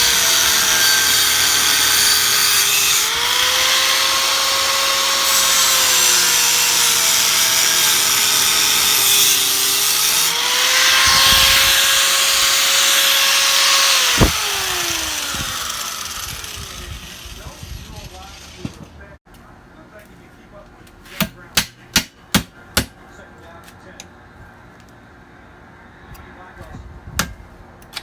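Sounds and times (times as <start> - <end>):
power tool cutting metal: 0.0 - 18.8.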